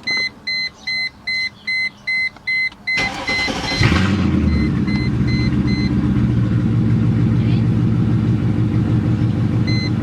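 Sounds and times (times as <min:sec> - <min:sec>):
car warning chime beeping: 0:00.0 - 0:06.0, 0:09.6 - 0:10.0
starter motor cranking: 0:03.0 - 0:04.3
car engine running: 0:03.0 - 0:10.0.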